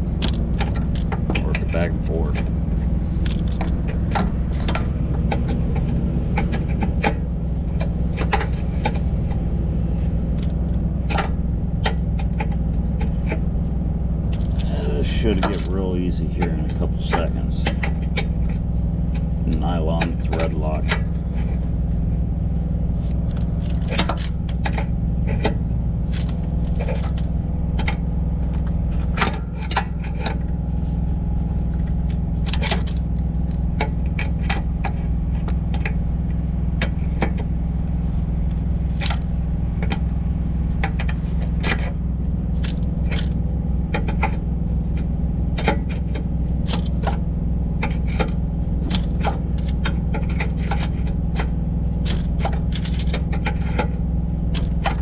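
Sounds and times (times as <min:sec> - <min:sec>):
engine idling: 0:00.0 - 0:55.0
wrench clicking and scraping: 0:42.6 - 0:55.0.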